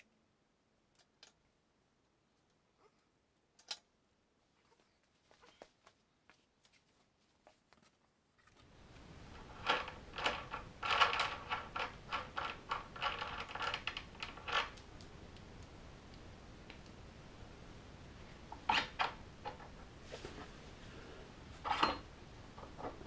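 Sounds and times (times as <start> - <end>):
small metal parts clinking: 9.3 - 15.8.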